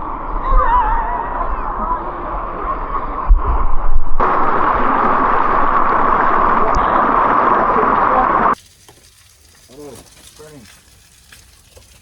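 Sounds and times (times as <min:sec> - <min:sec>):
low thumps: 0:03.2 - 0:08.6
water rushing down rocky creek: 0:04.2 - 0:12.0.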